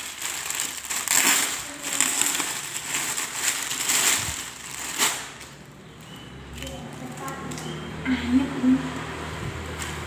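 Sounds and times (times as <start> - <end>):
sharp crackle: 0.0 - 5.6
plastic packaging crinkling: 0.0 - 7.7.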